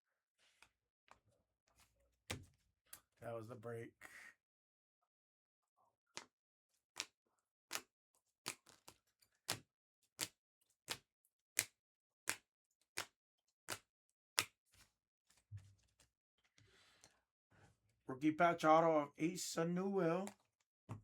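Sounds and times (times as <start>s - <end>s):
cards snapping on a table: 13.7s - 14.5s.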